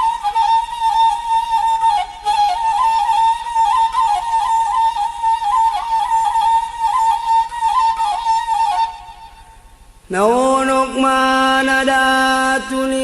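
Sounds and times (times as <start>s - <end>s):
flute playing folk melody: 0.0s - 10.4s.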